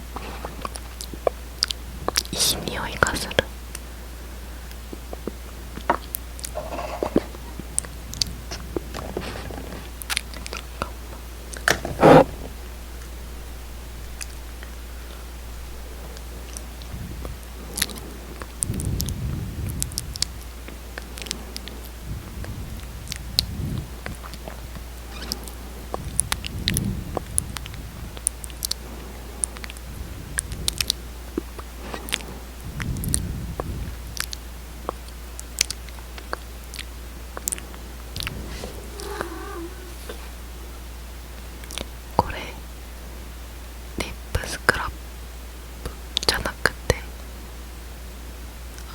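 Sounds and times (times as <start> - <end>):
wet lip smacks and clicks: 34.2 - 37.6.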